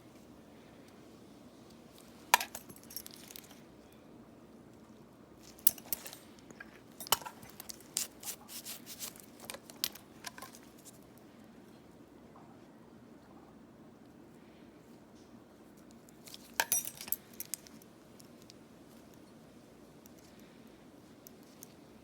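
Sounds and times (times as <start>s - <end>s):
faint room hiss: 0.0s - 22.0s
metal tools clicking and clinking: 2.3s - 3.6s, 5.4s - 8.1s, 16.3s - 17.8s.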